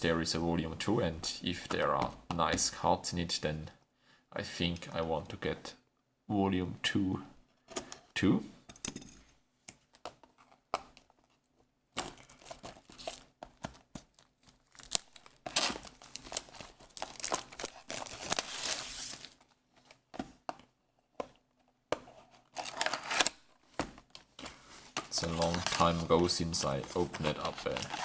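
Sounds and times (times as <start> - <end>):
plastic wrapping tearing and crinkling: 12.0 - 19.5, 22.6 - 23.4, 25.1 - 28.0.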